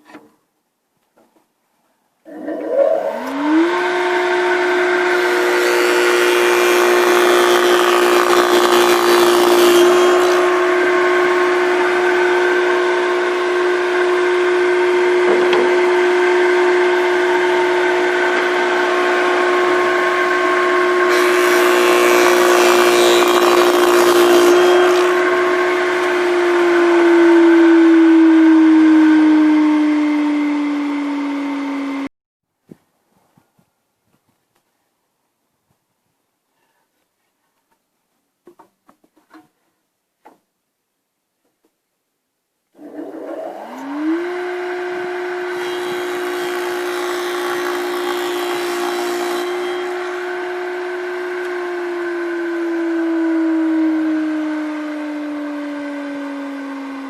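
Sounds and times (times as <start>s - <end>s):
electric motor whine: 2.9s - 32.1s, 42.8s - 57.0s.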